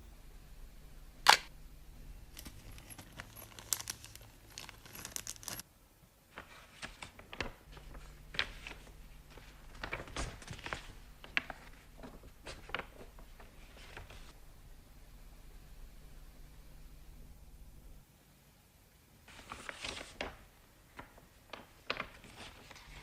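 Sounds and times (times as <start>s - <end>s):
packaging rustling and tearing: 2.4s - 5.6s, 6.4s - 14.3s.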